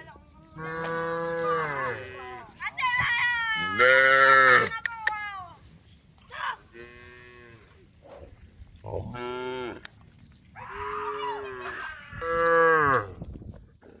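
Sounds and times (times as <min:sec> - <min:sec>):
cows mooing: 0:00.6 - 0:02.4, 0:03.6 - 0:04.7, 0:11.0 - 0:13.1.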